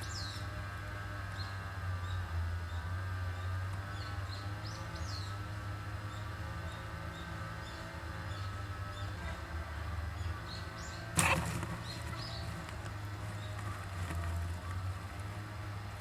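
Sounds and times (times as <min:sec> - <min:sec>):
steady low hum: 0:00.0 - 0:16.0
squirrels chirping: 0:10.2 - 0:14.8.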